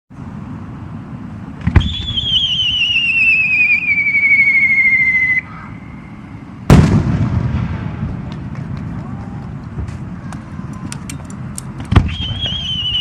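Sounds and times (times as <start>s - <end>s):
firework bang: 1.6s - 3.0s, 6.7s - 9.2s
firework whistling: 1.6s - 8.1s, 11.9s - 13.0s.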